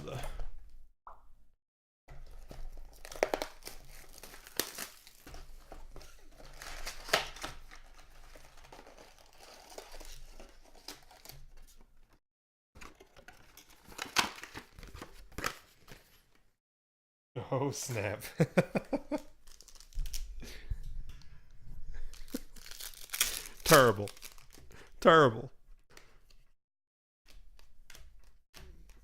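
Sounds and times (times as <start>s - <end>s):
wrappers crinkling: 2.2s - 11.5s, 19.1s - 20.4s, 22.0s - 25.0s
card packs being torn open: 2.2s - 11.8s, 12.8s - 15.8s, 19.1s - 20.4s, 22.0s - 25.0s.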